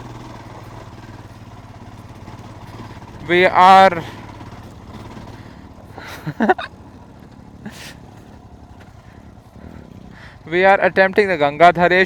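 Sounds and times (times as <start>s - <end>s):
motorcycle engine idling: 0.0s - 12.0s
person breathing: 5.2s - 6.2s, 7.6s - 8.0s, 9.0s - 10.4s.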